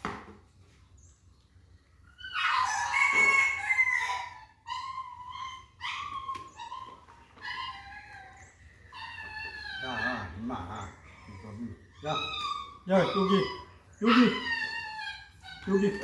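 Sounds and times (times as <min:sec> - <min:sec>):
puppy whining: 0:02.1 - 0:16.0
rooster crowing: 0:02.4 - 0:04.6.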